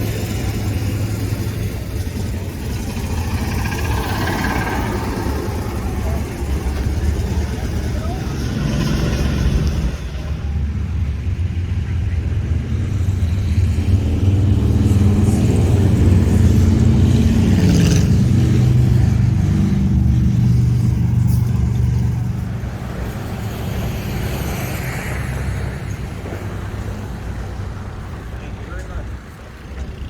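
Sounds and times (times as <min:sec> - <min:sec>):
vehicle engine running: 0:00.0 - 0:24.0.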